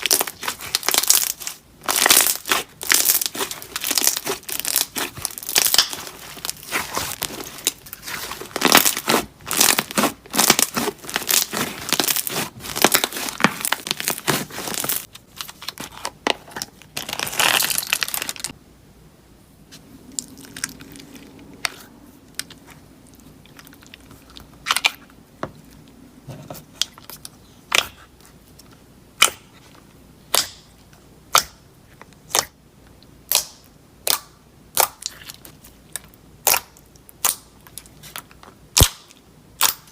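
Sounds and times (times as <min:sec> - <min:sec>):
slime popping: 0:00.0 - 0:15.1
slime squished by hand: 0:00.0 - 0:15.1.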